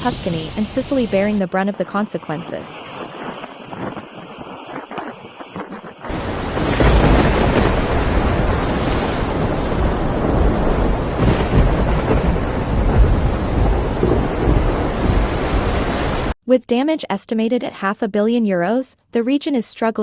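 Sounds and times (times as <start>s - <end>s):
wind buffeting microphone: 2.6s - 16.3s
rain: 6.1s - 16.4s.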